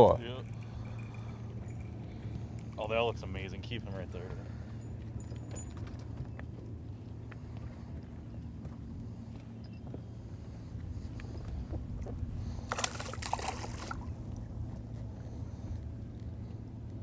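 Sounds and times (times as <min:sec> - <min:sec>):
steady low hum: 0:00.0 - 0:17.0
water splashing against boat: 0:11.2 - 0:15.4.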